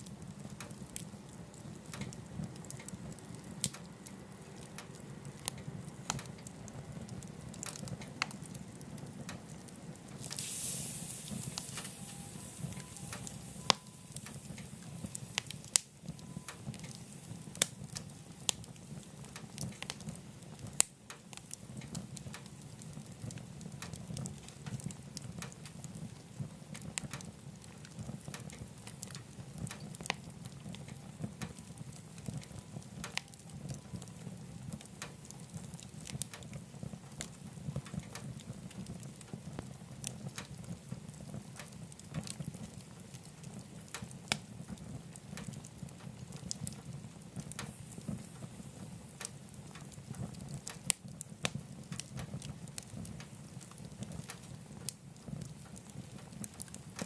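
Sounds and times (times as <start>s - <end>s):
fire crackles and pops: 0.0s - 57.0s
wood fire rumbling: 0.0s - 57.0s
brief hiss: 10.3s - 15.6s.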